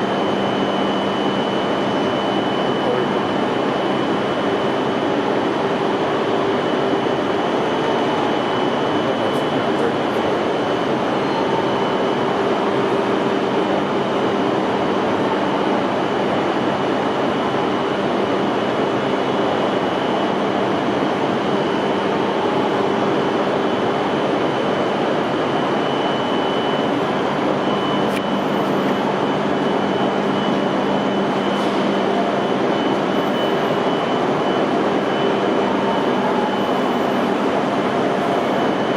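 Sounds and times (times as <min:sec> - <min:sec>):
train humming at platform: 0:00.0 - 0:38.9
thin high whine: 0:21.4 - 0:38.9.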